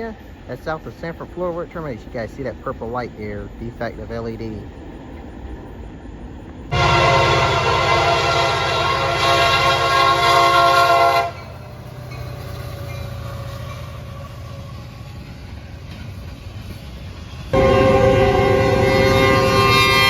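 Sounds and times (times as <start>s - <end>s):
locomotive air horn: 6.7s - 11.6s, 17.6s - 20.0s.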